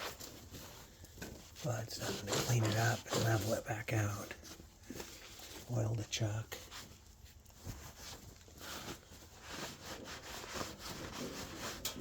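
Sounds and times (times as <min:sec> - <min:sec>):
scrubbing on metal: 0:00.0 - 0:04.2, 0:08.0 - 0:12.0.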